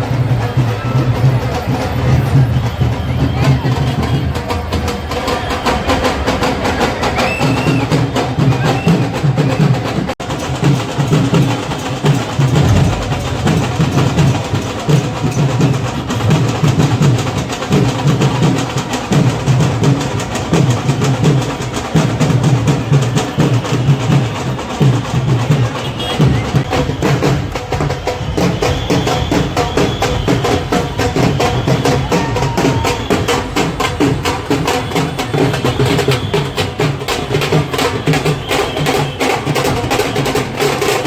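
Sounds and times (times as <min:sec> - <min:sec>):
snare drum rolls: 0:03.4 - 0:41.0
low drum beat: 0:07.8 - 0:23.1.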